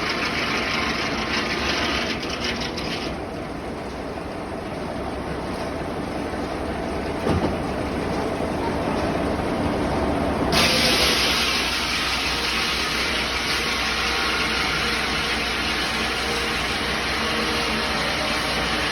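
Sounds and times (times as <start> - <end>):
sawmill machinery rumbling: 0.0 - 18.9.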